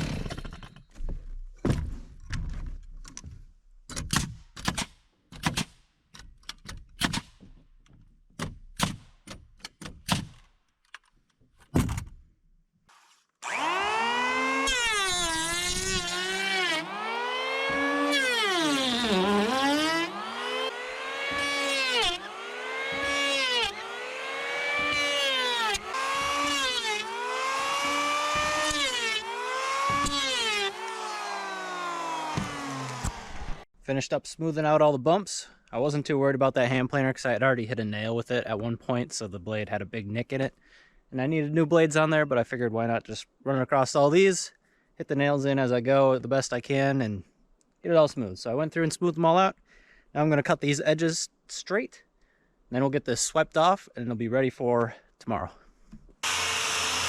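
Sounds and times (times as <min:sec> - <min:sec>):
electric hand planer: 0:13.4 - 0:33.6, 0:56.2 - 0:57.0
hammer striking nails: 0:24.7 - 0:26.8, 0:29.8 - 0:31.0.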